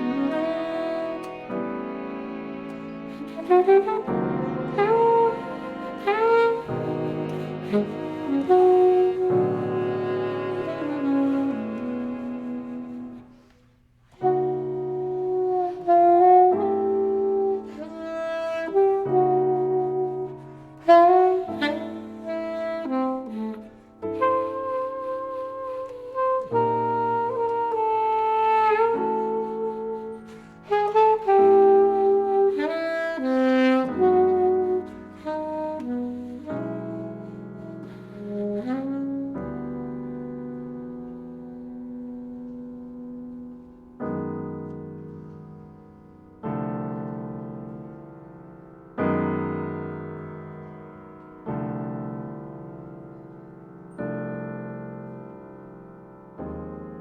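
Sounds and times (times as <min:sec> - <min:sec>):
strings: 0:00.0 - 0:13.6
alto saxophone melody: 0:00.0 - 0:57.0
sustained piano chords: 0:00.0 - 0:57.0.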